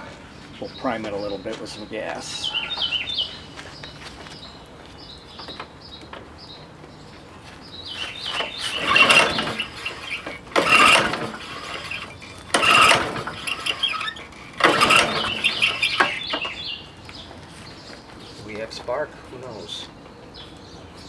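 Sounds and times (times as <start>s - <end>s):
lawnmower engine cranking: 7.9s - 16.8s.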